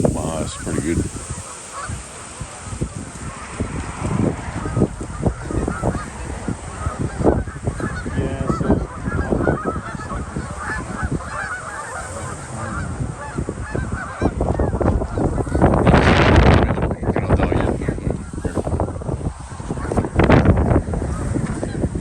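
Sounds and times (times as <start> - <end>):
flock of geese honking: 0.0 - 22.0
wind buffeting microphone: 0.0 - 22.0.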